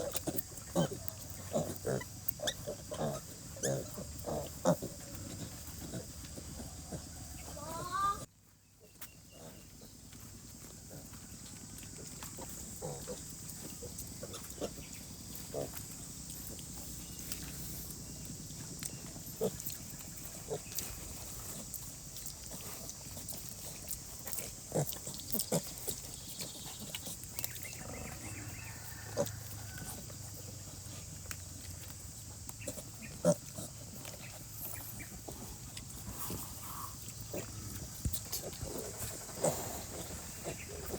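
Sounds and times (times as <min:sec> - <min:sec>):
pigs grunting: 0:00.0 - 0:08.3, 0:09.3 - 0:40.9.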